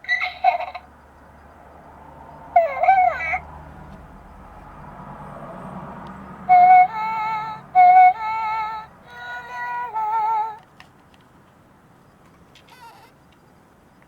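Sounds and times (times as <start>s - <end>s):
toy electronic tune: 2.6s - 3.4s, 6.5s - 10.6s.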